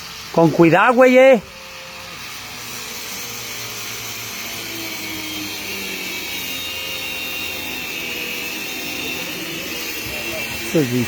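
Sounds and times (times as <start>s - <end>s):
angle grinder cutting: 0.0s - 11.0s.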